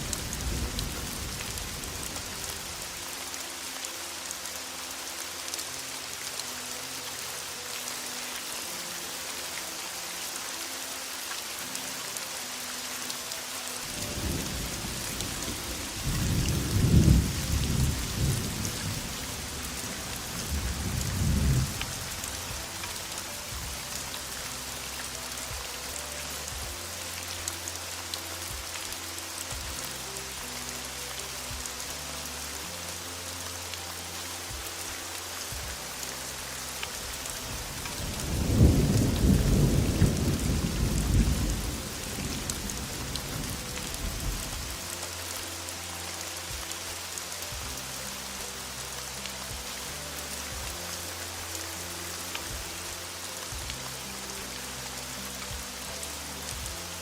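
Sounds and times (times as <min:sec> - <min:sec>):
heavy rain falling: 0:00.0 - 0:57.0
thunder rumbling: 0:14.0 - 0:22.9, 0:38.1 - 0:44.5.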